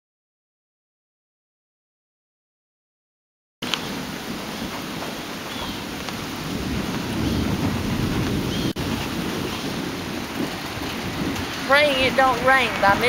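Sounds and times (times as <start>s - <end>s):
low rumble of thunder: 3.6s - 13.0s
steady rain: 3.6s - 13.0s.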